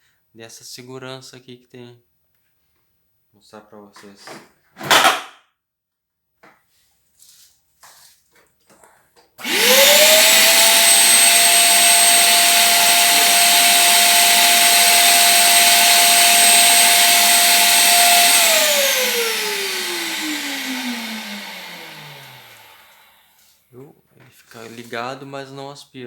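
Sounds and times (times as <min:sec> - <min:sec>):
vacuum cleaner motor whine: 0:09.4 - 0:23.4.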